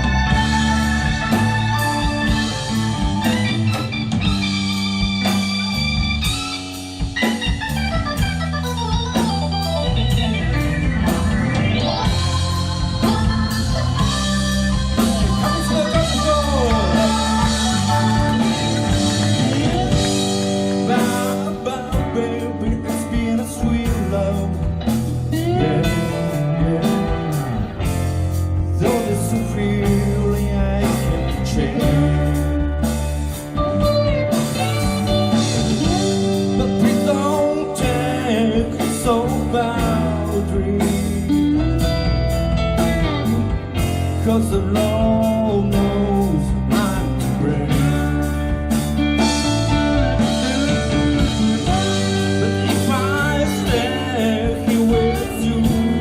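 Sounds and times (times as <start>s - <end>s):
bass: 0.0s - 56.0s
drums: 0.0s - 56.0s
electric guitar lead: 0.0s - 56.0s
organ chords: 0.0s - 56.0s.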